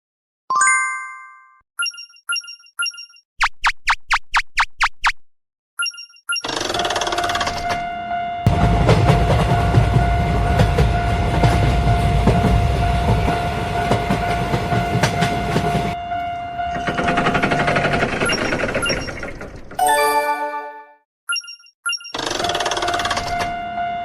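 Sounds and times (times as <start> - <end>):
train rumbling with clacking wheels: 8.4 - 19.7
steady high tone: 19.8 - 21.0.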